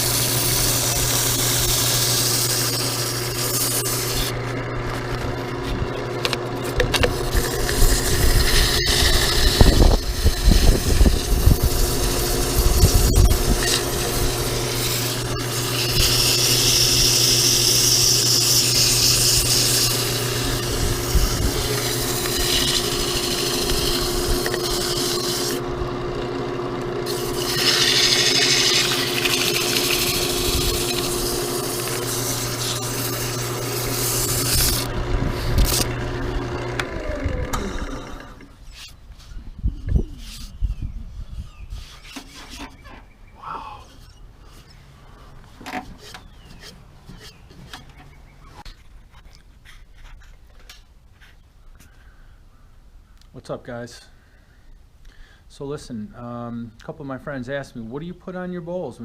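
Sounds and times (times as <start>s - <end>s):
sandpaper scratching spinning wood: 0.0s - 25.7s, 27.0s - 42.8s, 43.7s - 48.8s
lathe motor hum: 0.0s - 38.9s.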